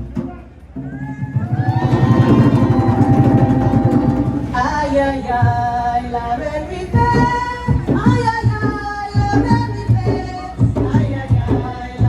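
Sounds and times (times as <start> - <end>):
steady low beat: 1.5 - 8.6
person singing long sliding notes: 1.6 - 6.9.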